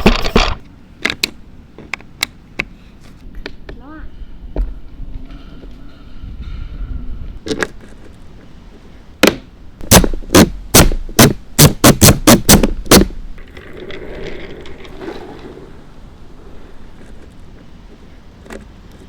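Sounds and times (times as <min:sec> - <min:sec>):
sharp knocks: 0:09.2 - 0:13.2.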